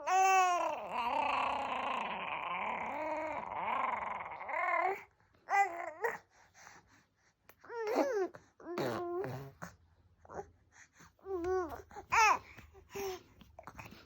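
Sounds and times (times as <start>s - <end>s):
baby vocalizing: 7.8s - 9.7s.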